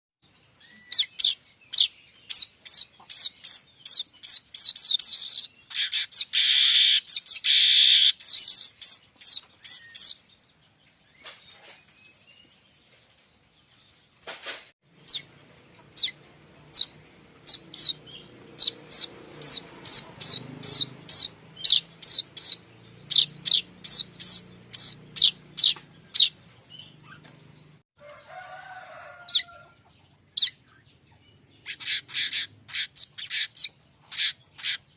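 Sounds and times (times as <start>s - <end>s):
bird chirping: 0.2s - 34.9s
buzzy bird chattering: 0.8s - 10.2s, 15.0s - 27.4s, 31.6s - 34.9s.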